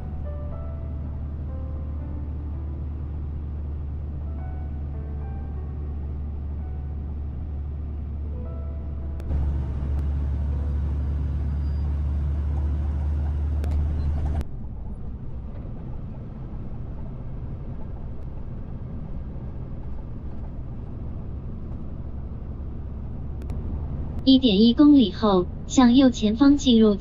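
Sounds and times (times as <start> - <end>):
road noise: 0.0 - 27.0
truck engine drone: 0.0 - 27.0.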